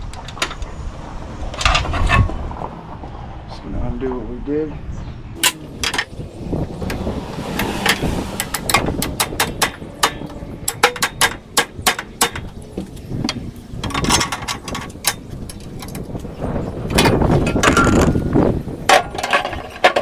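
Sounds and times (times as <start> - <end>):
ringing metal clanks: 8.4 - 12.5
metal clicks and knocks: 8.4 - 16.3, 18.9 - 20.0.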